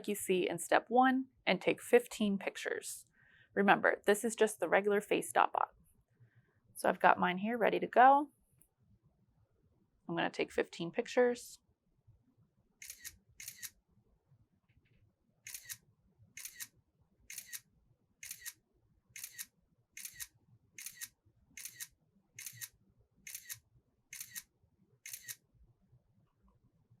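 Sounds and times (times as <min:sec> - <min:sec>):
camera shutter double clicks: 0:15.5 - 0:15.8, 0:17.3 - 0:17.6, 0:18.2 - 0:18.6, 0:19.2 - 0:22.7, 0:23.3 - 0:23.6, 0:24.2 - 0:24.5, 0:25.1 - 0:25.4.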